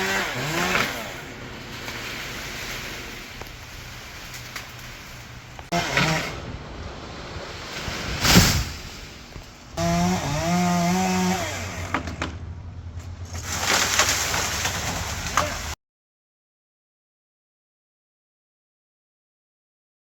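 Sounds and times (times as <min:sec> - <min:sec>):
chainsaw running: 0:00.0 - 0:02.8, 0:05.7 - 0:06.5, 0:09.8 - 0:12.5
loud thump: 0:08.2 - 0:09.0.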